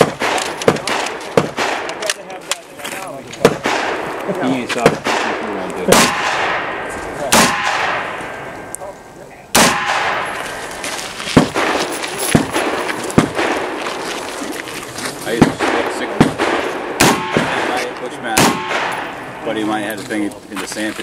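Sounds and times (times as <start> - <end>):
rifle shots echoing: 0.0 - 2.4, 3.4 - 8.7, 9.5 - 14.1, 15.3 - 19.8
rapid sharp rifle cracks: 0.0 - 2.6, 3.4 - 4.2, 4.9 - 8.4, 11.4 - 14.0, 15.3 - 19.4.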